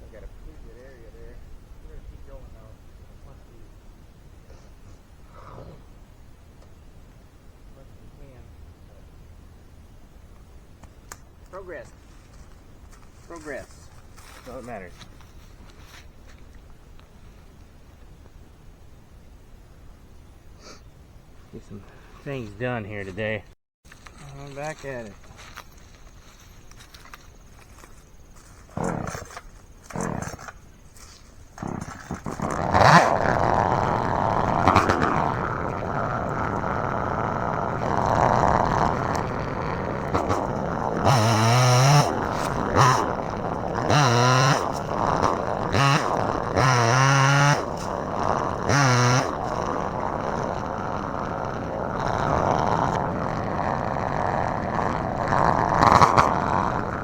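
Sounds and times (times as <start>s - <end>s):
chainsaw running and revving: 28.8s - 30.4s, 31.6s - 57.0s.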